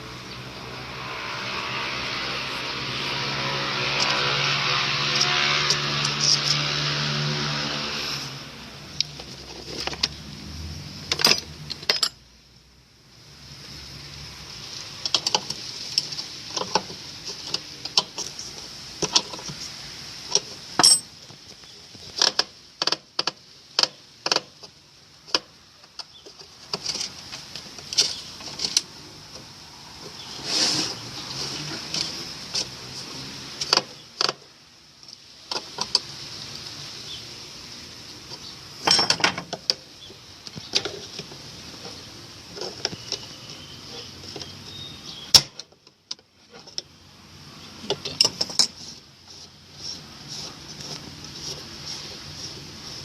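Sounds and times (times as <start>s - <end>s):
faint steady hiss: 7.9s - 53.0s
metallic clinks and knocks: 20.8s - 21.1s, 38.8s - 39.5s.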